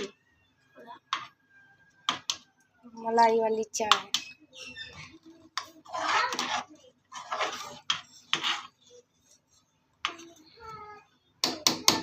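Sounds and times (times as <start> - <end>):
metal spoon scraping a pan: 3.8 - 10.6.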